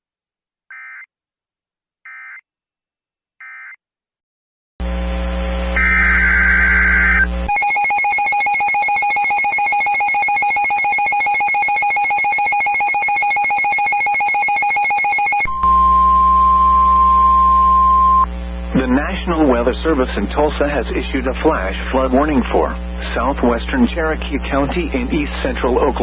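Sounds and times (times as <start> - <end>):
loud electrical hum: 4.8 - 8.0, 15.5 - 26.0
digital data bursts: 5.8 - 15.5
two-tone attention signal: 7.5 - 18.3.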